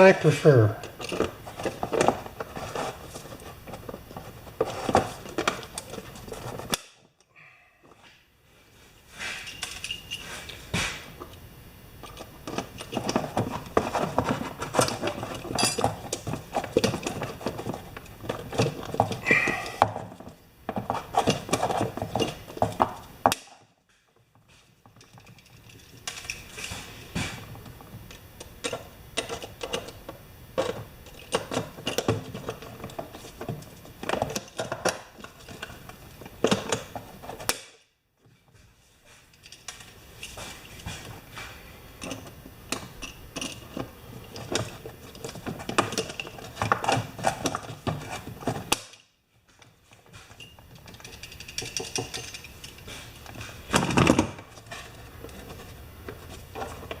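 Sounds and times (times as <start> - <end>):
small metal parts clattering: 9.4 - 10.4, 12.0 - 20.4, 24.8 - 26.9, 50.1 - 57.0.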